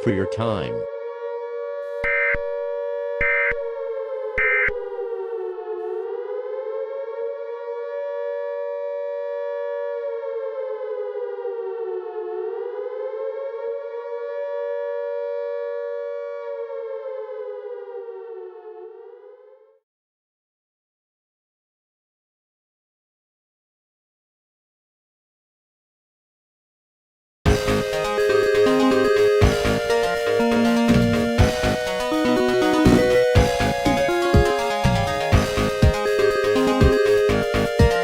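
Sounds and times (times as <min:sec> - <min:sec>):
continuous siren tone: 0:00.0 - 0:19.8, 0:27.5 - 0:38.0
short electronic data bursts: 0:02.0 - 0:02.4, 0:03.2 - 0:03.6, 0:04.4 - 0:04.8.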